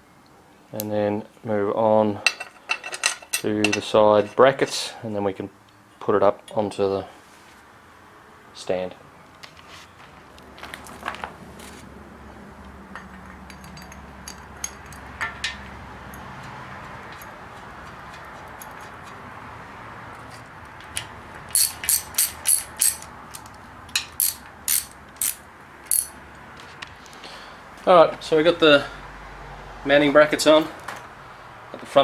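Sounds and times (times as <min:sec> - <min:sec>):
metal tool clicks and clinks: 0:13.0 - 0:16.3, 0:20.2 - 0:26.2
ratcheting sharp clicks: 0:20.9 - 0:26.2.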